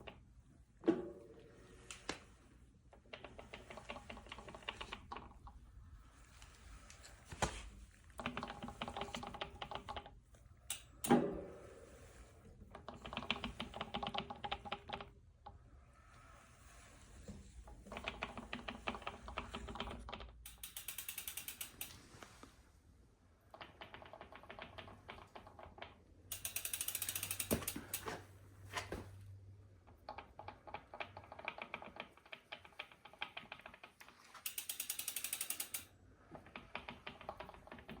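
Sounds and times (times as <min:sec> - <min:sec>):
bike motor ratcheting clicks: 0:18.0 - 0:22.0, 0:26.3 - 0:28.2, 0:34.4 - 0:38.0.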